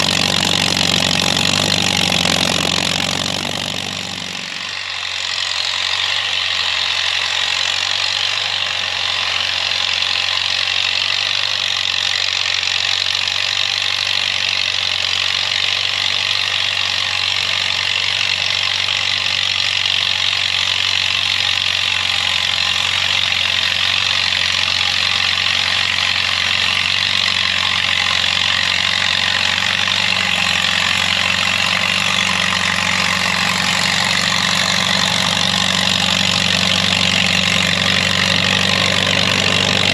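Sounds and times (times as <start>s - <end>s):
tractor engine running under load: 0.0s - 39.9s.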